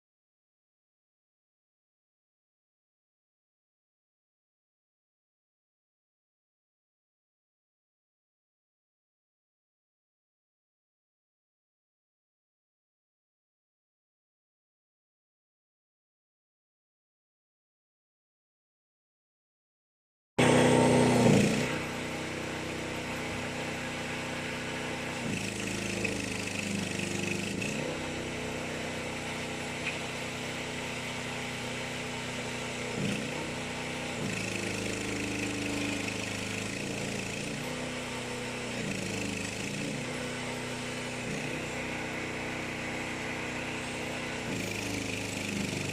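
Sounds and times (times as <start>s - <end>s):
small excavator engine running: 20.4s - 45.9s.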